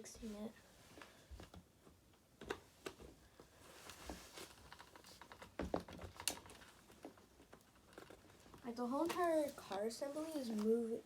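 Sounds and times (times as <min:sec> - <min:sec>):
plastic parts clicking: 0:04.6 - 0:09.3.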